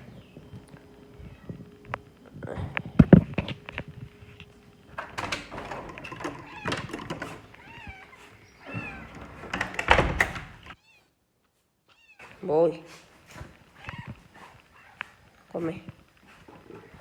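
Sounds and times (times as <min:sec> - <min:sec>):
cats meowing: 0:07.5 - 0:09.1, 0:13.8 - 0:14.2.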